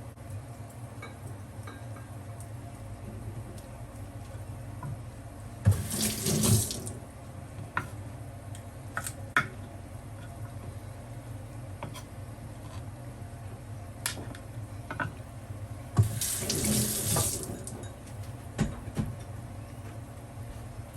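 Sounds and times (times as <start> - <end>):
water running: 5.6 - 7.0, 16.0 - 18.0.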